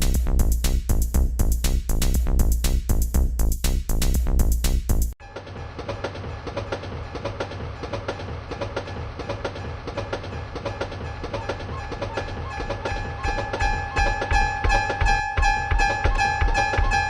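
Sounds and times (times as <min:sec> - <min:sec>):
train wheels clattering on track: 0:05.2 - 0:17.0.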